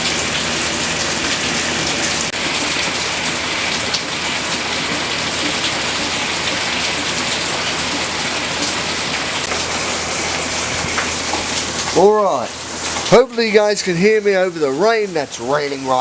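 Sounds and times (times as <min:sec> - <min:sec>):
heavy rain on a shed: 0:00.0 - 0:16.0
person talking: 0:11.9 - 0:16.0.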